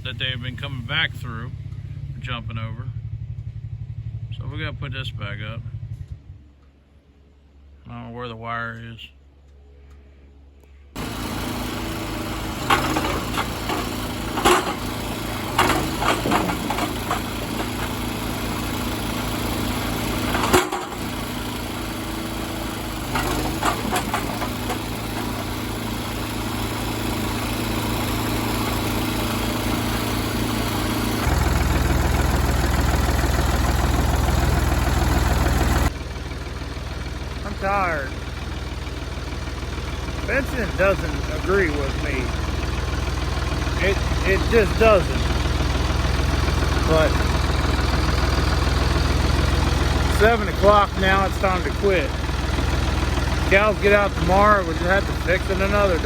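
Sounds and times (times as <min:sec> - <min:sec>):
engine running: 0:00.0 - 0:08.2, 0:09.3 - 0:56.0
sharp knocks and bangs: 0:11.0 - 0:34.0.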